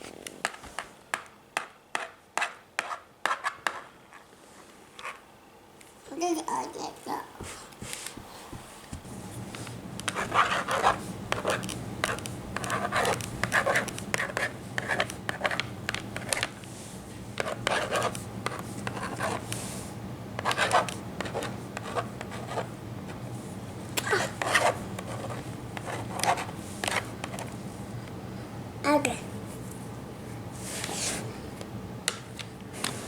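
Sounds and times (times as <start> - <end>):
drawing tool scribbling: 10.1 - 15.6, 17.4 - 19.8, 20.4 - 22.7, 24.2 - 27.5.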